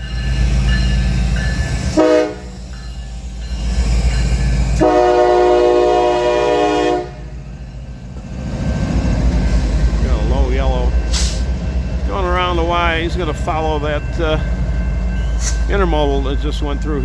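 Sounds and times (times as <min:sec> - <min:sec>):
diesel locomotive engines rumbling: 0:00.0 - 0:17.0
train air horn blasts: 0:01.9 - 0:02.5, 0:04.8 - 0:07.3.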